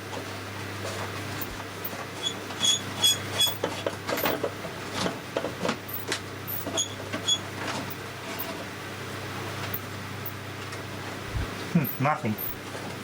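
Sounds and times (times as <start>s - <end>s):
radio speaker hum: 11.2s - 12.6s.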